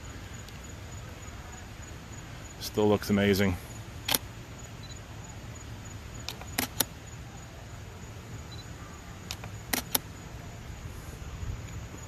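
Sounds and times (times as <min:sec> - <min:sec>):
faint insect chirping: 0:00.0 - 0:12.0
low outdoor hum: 0:00.0 - 0:12.0
sharp clicks: 0:06.2 - 0:06.9, 0:09.3 - 0:10.1.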